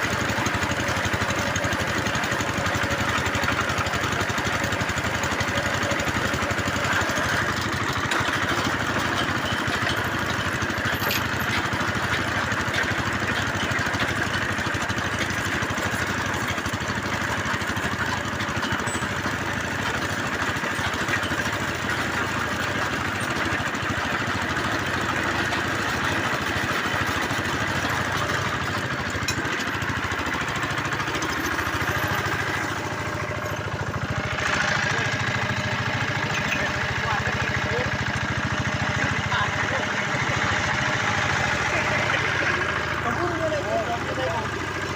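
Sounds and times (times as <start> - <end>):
drilling rig engine running: 0.0 - 44.9.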